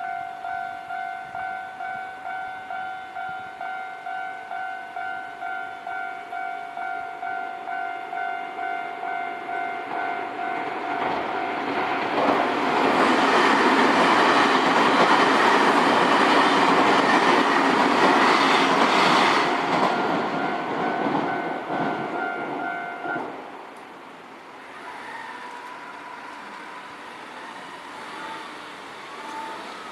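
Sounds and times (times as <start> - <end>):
level crossing warning bell: 0.0 - 11.7
train wheels on rails: 9.4 - 29.9
faint road traffic: 21.3 - 29.9.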